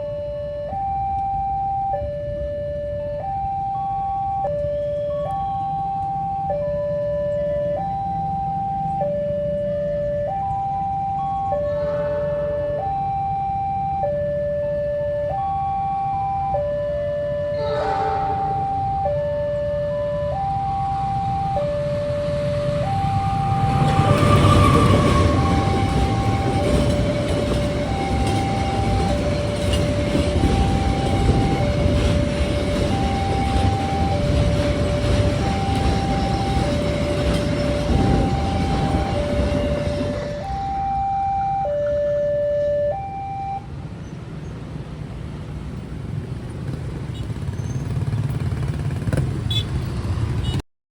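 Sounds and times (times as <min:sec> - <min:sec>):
level crossing two-tone alarm: 0:00.0 - 0:43.7
train rumbling: 0:16.9 - 0:41.5.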